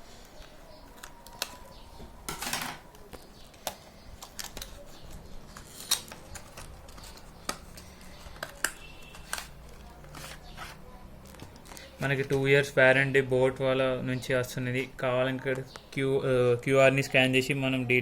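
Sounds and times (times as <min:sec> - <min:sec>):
packaging clicks and taps: 0:00.3 - 0:12.4
packaging scraping rustle: 0:04.2 - 0:10.8.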